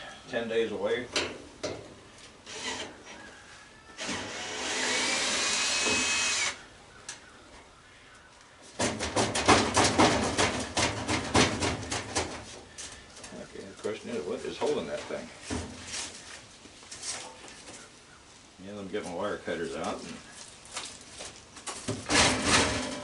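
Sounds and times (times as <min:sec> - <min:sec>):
power drill spinning: 0:04.0 - 0:06.6
rapid knocks and clatters: 0:08.8 - 0:12.5.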